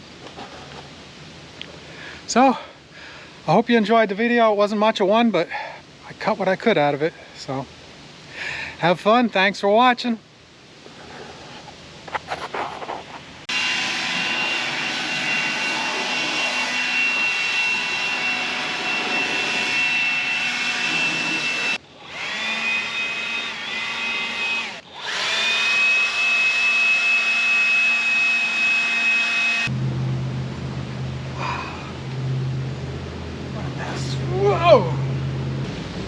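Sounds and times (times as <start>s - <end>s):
sawmill blade high-pitched whine: 13.5s - 35.6s.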